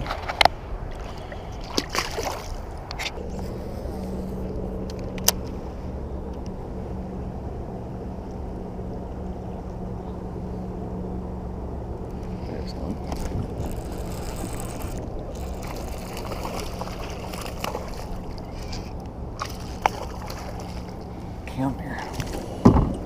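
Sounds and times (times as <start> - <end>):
wind noise: 0.0 - 21.5
water wash: 11.8 - 23.0
small motor humming: 11.9 - 19.0.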